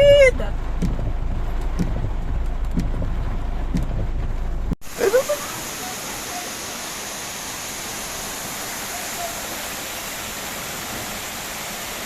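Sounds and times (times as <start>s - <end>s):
heavy rain pouring: 0.0s - 12.0s
rainwater rushing: 0.0s - 12.0s.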